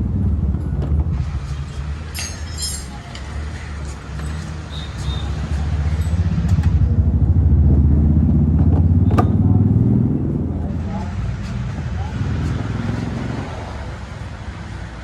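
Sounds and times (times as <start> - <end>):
motorcycle engine droning: 4.1 - 14.4.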